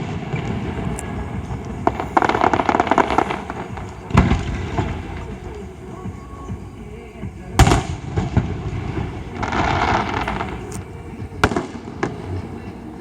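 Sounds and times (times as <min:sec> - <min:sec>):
firework bangs: 0:00.0 - 0:13.0
hissing crackle: 0:00.0 - 0:13.0
low rumble: 0:00.0 - 0:13.0.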